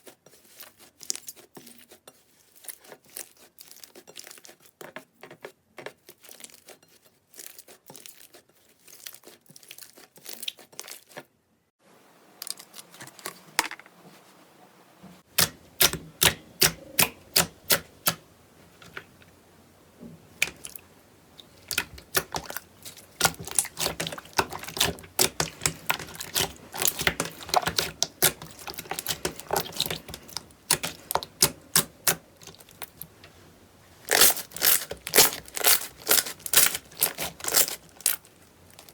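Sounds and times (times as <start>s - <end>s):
slime crackling and popping: 21.4s - 33.2s, 34.0s - 38.9s.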